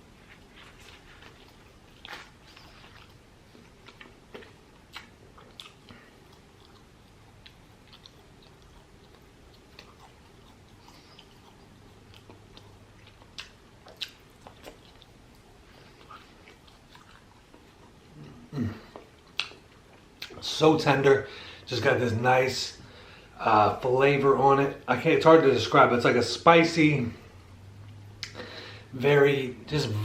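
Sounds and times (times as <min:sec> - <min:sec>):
person chewing food: 0:00.0 - 0:20.4.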